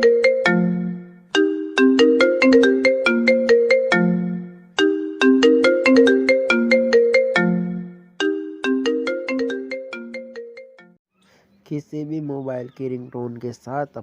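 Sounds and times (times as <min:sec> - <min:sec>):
mobile phone ringtone melody: 0:00.0 - 0:11.0.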